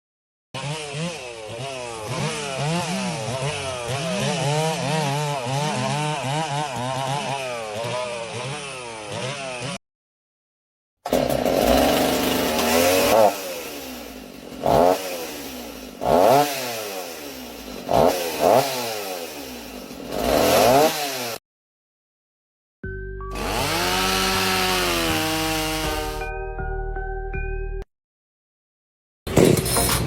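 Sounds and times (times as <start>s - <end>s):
chainsaw engine revving: 0.6s - 9.8s, 11.0s - 21.4s, 23.3s - 26.3s.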